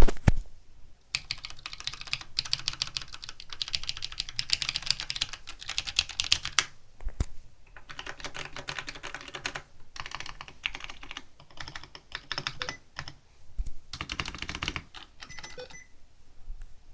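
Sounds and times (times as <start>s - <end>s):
fast keyboard typing: 1.1s - 6.7s, 7.7s - 13.2s, 13.9s - 15.8s.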